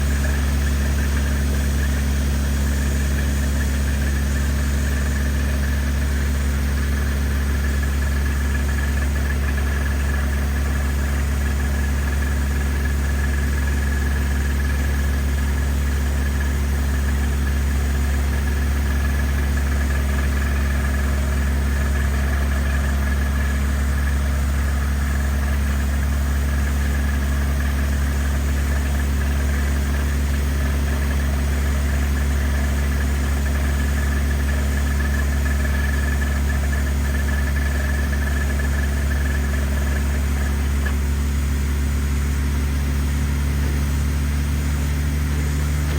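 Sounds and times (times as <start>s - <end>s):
engine running steadily: 0.0s - 45.9s.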